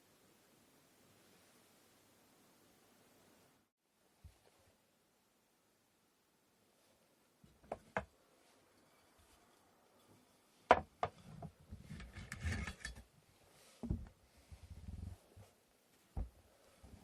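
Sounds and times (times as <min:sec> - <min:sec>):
sticks handling and rubbing: 0:07.6 - 0:17.0.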